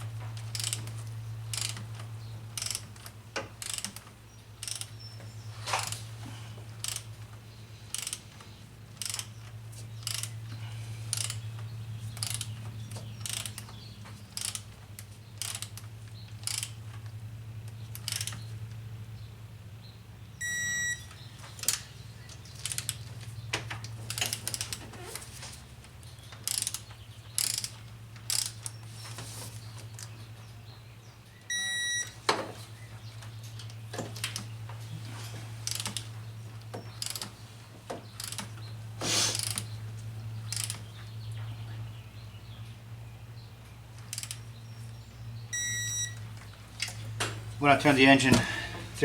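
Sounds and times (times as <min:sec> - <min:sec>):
hand ratchet clicking: 0:00.4 - 0:05.0, 0:06.8 - 0:07.1, 0:07.9 - 0:11.4, 0:12.1 - 0:17.1, 0:17.7 - 0:18.4, 0:21.6 - 0:23.0, 0:24.1 - 0:24.9, 0:26.3 - 0:28.8, 0:35.6 - 0:36.1, 0:36.9 - 0:37.4, 0:38.2 - 0:39.7, 0:40.5 - 0:40.8, 0:44.0 - 0:44.4
short electronic beep: 0:20.4 - 0:21.1, 0:31.5 - 0:32.2, 0:45.5 - 0:46.2.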